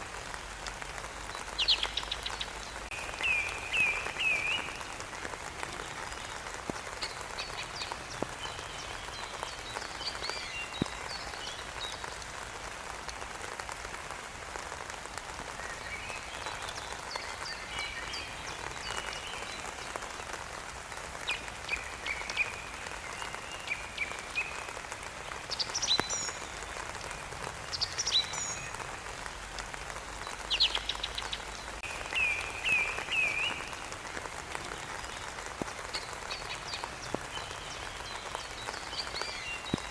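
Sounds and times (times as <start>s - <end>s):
steady rain: 0.0s - 39.9s
birds chirping: 0.9s - 12.2s, 21.2s - 39.9s.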